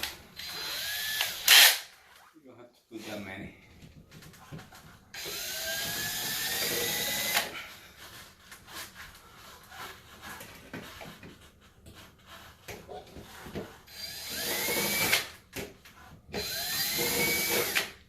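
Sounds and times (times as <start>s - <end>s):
power drill whining on sheet metal: 0.0s - 2.2s, 4.5s - 7.7s, 13.1s - 18.0s.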